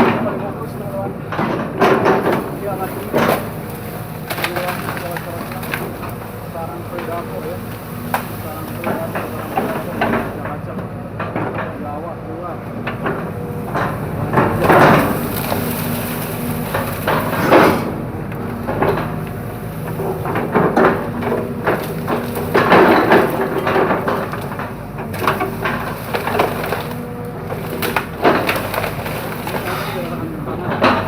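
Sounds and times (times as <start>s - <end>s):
excavator diesel engine hum: 0.0s - 31.0s
bamboo cracking and splintering: 2.3s - 9.7s, 14.5s - 30.2s.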